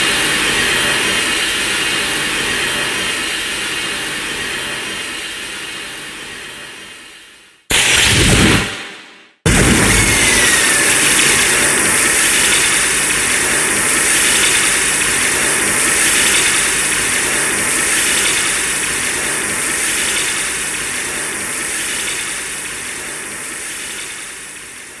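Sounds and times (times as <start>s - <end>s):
falling whistle: 9.5s - 13.0s
steady mechanical hiss: 10.8s - 25.0s.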